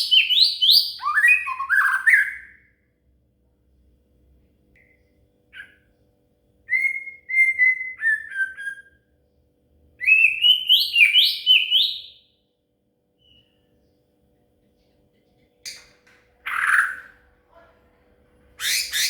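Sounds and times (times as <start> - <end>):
bird singing whistled notes: 6.7 - 9.0, 10.0 - 12.3, 13.2 - 13.7
faint steady hum: 12.2 - 19.0.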